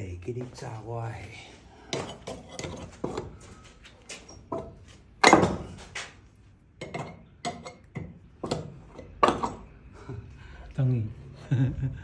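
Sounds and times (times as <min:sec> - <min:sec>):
hand tools knocking on wood: 0:02.0 - 0:03.5, 0:04.4 - 0:06.0, 0:06.8 - 0:10.2.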